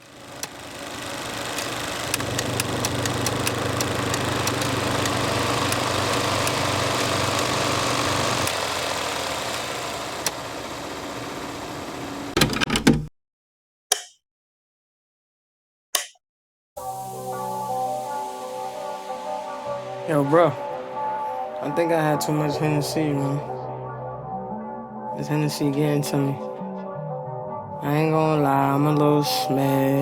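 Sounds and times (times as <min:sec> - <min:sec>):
engine idling: 0:00.0 - 0:12.3.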